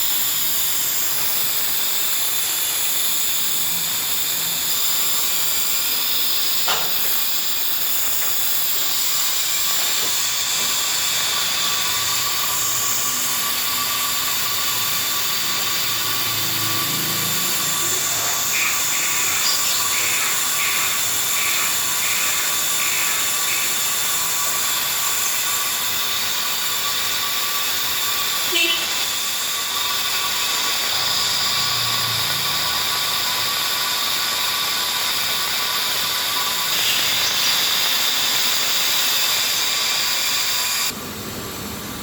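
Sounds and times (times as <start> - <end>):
hissing whirring machine noise: 0.0 - 42.0
short high tones: 28.5 - 29.2.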